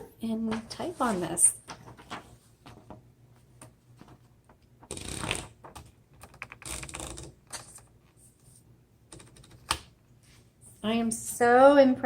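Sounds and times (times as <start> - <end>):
paper rustling and sliding: 0.5 - 3.0.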